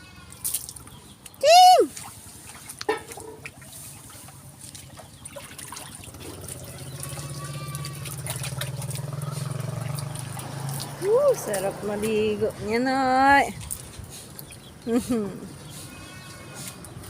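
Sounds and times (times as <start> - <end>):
water splashing and trickling: 0.0 - 17.0
small splashy clicks: 4.6 - 11.7.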